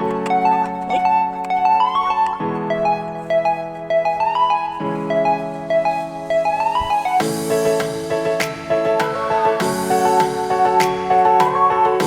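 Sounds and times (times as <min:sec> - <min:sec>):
light instrumental keyboard music: 0:00.0 - 0:12.0.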